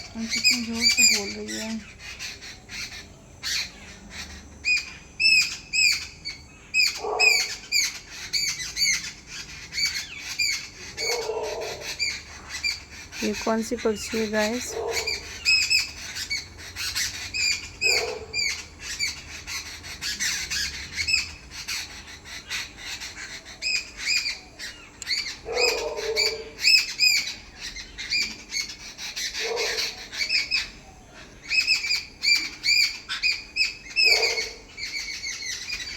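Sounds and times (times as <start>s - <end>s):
bird chirping rapidly: 0.0s - 30.8s, 31.4s - 35.9s
harsh bird call: 9.8s - 35.9s.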